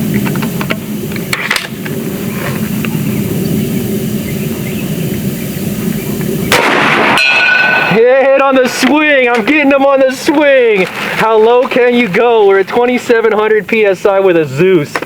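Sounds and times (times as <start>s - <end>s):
low background rumble: 0.0s - 14.9s
air rifle firing: 6.2s - 9.5s.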